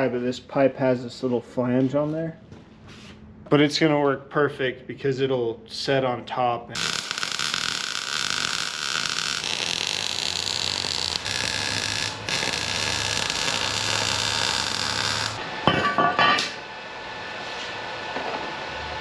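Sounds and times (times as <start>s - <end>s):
welder hissing: 6.8s - 15.4s.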